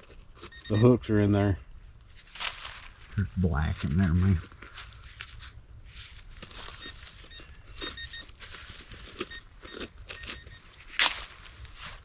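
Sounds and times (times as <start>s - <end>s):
faint electronic beeps: 0.4s - 1.8s, 6.6s - 10.9s
scraping and rustling in leaves: 2.1s - 3.2s, 4.0s - 7.4s, 10.7s - 12.0s.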